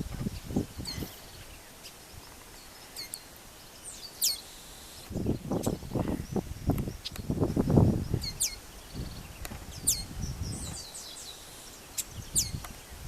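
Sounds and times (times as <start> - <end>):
birds chattering: 0.2 - 13.0
birds whistling downward: 2.6 - 7.2, 8.0 - 13.0.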